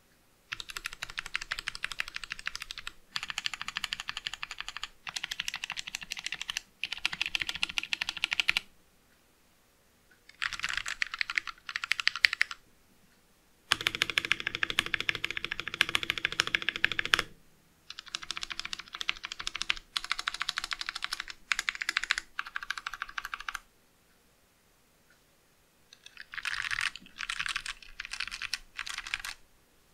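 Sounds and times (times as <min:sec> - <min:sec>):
fast typing on mechanical keyboard: 0:00.5 - 0:08.7, 0:10.3 - 0:12.6, 0:13.7 - 0:17.3, 0:17.9 - 0:23.6, 0:25.9 - 0:29.4.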